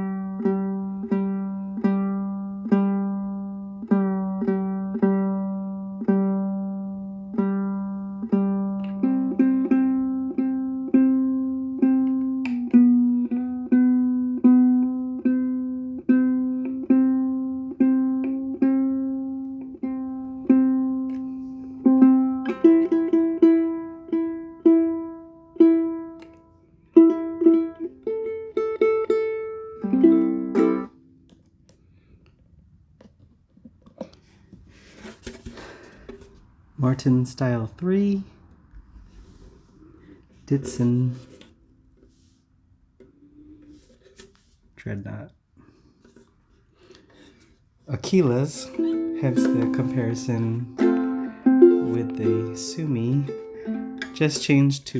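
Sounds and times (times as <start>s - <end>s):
ukulele strummed chord: 0.0s - 31.2s, 48.0s - 54.8s
ukulele melody: 0.0s - 32.1s, 39.0s - 42.4s, 45.7s - 54.9s.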